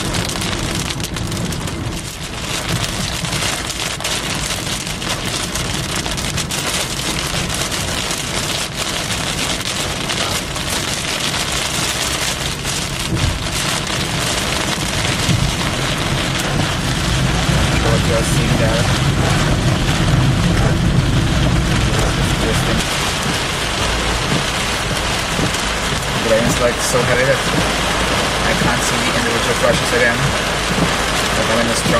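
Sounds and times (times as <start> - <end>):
heavy rain drumming on car roof: 0.0 - 31.9
low rumble: 10.0 - 31.9.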